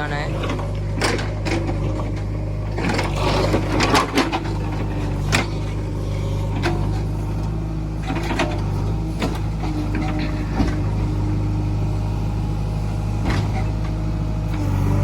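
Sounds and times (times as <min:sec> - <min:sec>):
diesel engine running: 0:00.0 - 0:15.0
metallic clanks and knocks: 0:00.4 - 0:05.7.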